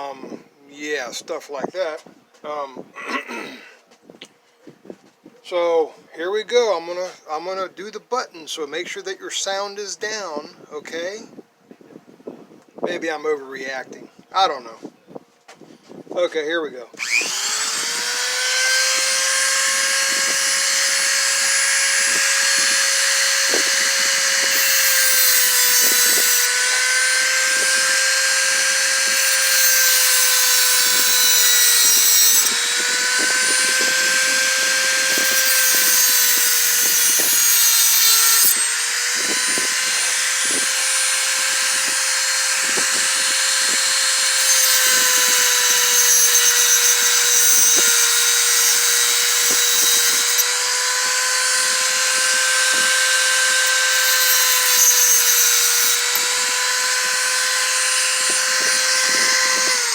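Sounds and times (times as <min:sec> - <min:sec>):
rotary tool cutting metal: 0:17.0 - 0:59.9.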